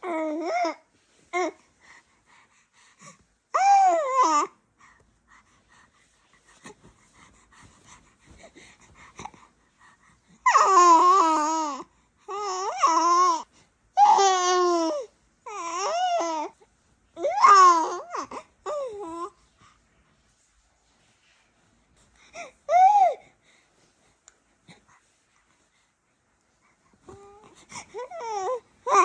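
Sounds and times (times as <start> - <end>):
baby babbling: 10.4 - 16.6, 17.2 - 19.3, 27.1 - 29.0.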